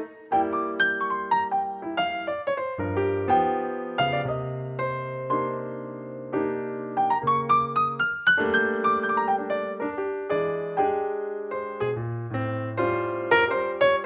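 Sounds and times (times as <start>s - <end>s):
background piano music: 0.0s - 14.0s.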